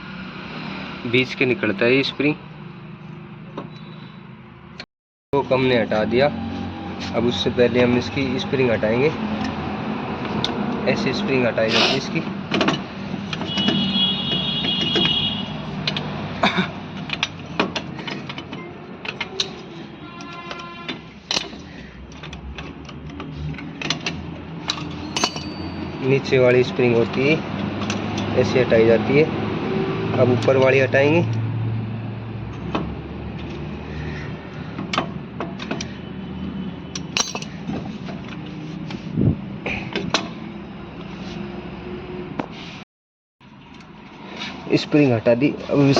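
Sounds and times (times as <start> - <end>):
tool clicks clinks and scrapes on metal: 16.9 - 26.1, 37.0 - 37.7.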